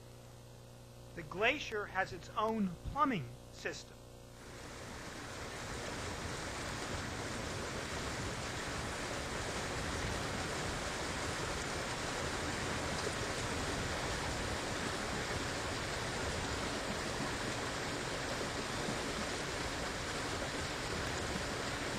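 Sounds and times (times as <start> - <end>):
meltwater rushing through channel: 4.4 - 21.9.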